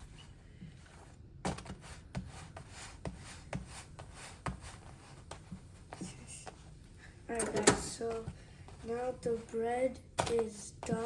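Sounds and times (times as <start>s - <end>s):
rubbing: 1.5s - 6.6s.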